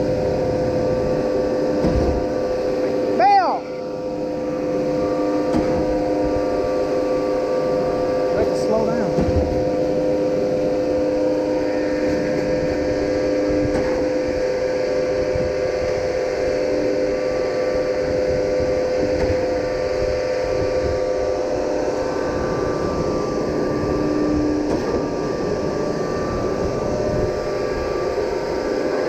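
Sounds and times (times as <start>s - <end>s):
concrete pump engine hum: 0.0s - 29.0s
lower tone: 0.0s - 29.0s.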